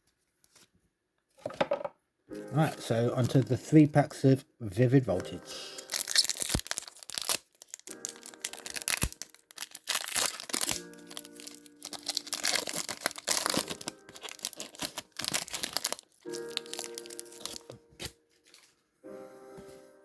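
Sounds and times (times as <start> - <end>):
background music: 2.3 - 20.0
wrapper tearing and crinkling: 5.6 - 18.7.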